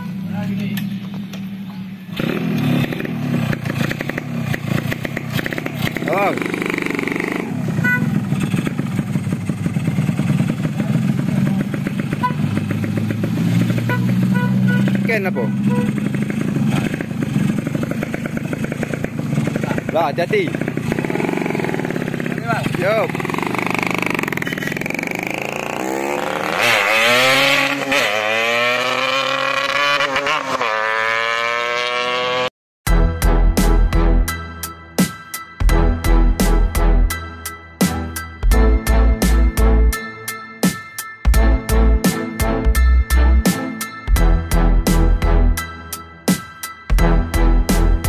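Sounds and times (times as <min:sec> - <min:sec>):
two-stroke engine running: 0:00.8 - 0:30.0.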